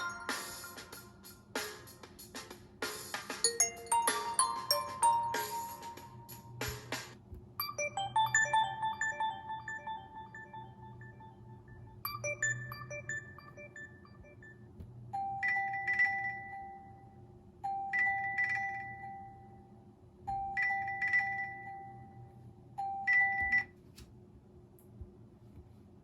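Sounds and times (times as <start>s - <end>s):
phone ringtone chiming: 0.0s - 1.0s, 3.5s - 6.7s, 7.6s - 23.7s.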